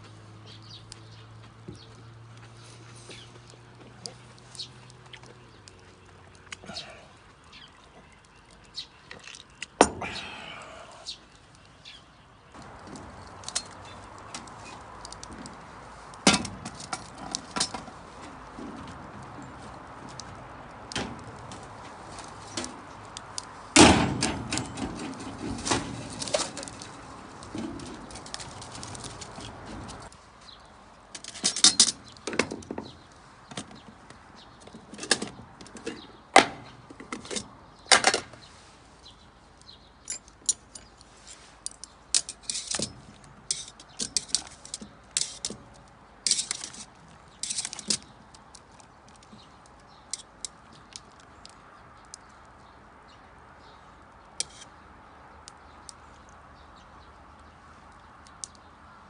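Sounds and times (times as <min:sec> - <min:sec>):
knocks and clicks of objects handled: 0:12.6 - 0:30.2, 0:31.1 - 0:38.5, 0:40.0 - 0:52.4.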